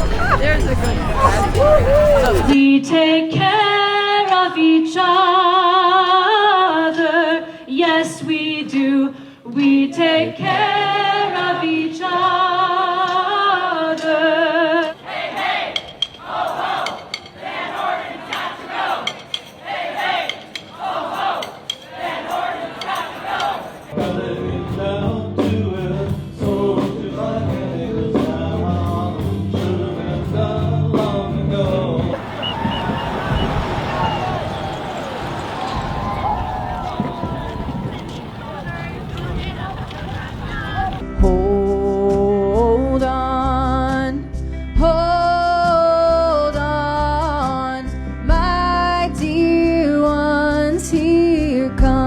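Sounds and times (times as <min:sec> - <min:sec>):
drums: 0:00.0 - 0:02.6, 0:23.9 - 0:49.5, 0:50.9 - 0:52.0.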